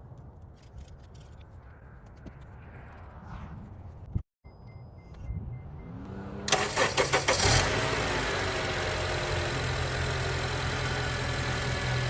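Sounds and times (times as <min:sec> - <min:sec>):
car engine starter cranking: 0:06.5 - 0:08.8
car engine idling: 0:06.5 - 0:12.0.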